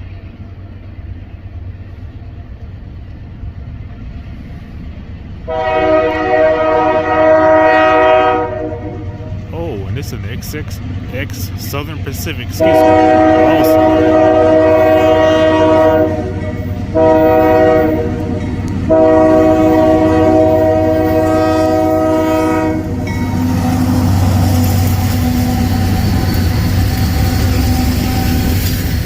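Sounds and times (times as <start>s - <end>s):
locomotive engine rumble: 0.0s - 29.0s
locomotive air horn blasts: 5.5s - 9.3s, 12.6s - 23.0s.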